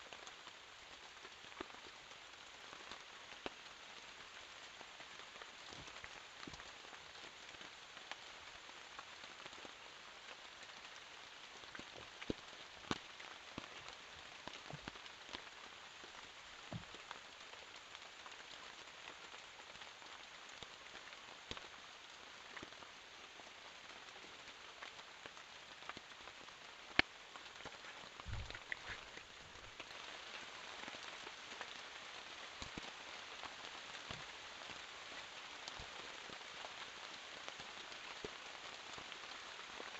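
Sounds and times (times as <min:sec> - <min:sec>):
steady rain falling: 0:00.0 - 0:39.9
heavy raindrops clicking: 0:25.8 - 0:30.1
low thump: 0:28.3 - 0:28.6.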